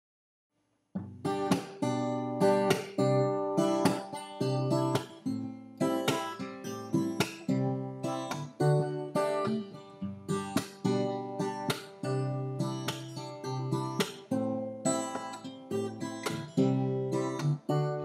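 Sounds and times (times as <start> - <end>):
strummed acoustic guitar: 1.0 - 18.0.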